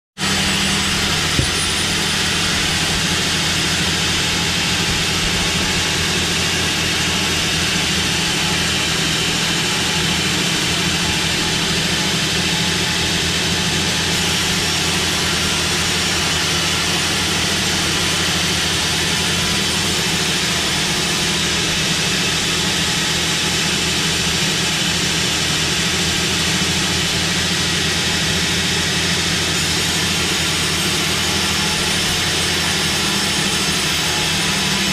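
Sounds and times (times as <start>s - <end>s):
sawmill machinery running: 0.2s - 34.9s.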